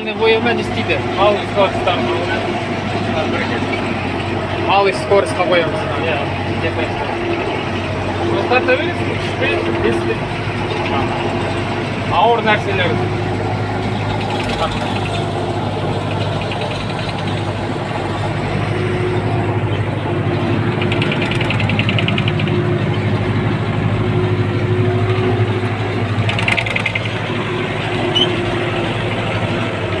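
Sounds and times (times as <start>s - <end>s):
tractor diesel engine running: 0.0s - 30.0s
rapid rattle: 6.6s - 23.6s, 26.0s - 30.0s.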